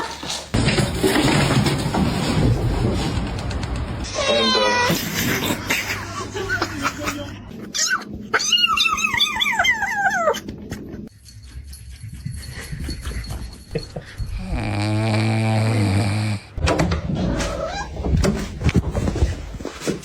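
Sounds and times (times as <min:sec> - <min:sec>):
dog whining: 0:07.6 - 0:11.0
dog yipping: 0:07.8 - 0:10.5.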